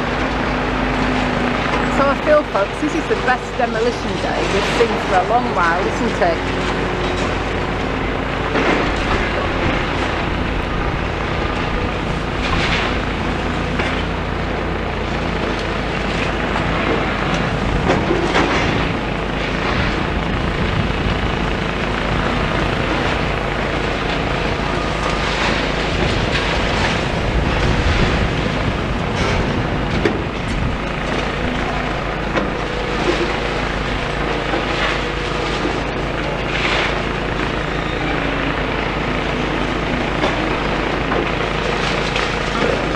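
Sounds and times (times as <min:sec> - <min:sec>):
excavator engine running: 0:00.0 - 0:42.9.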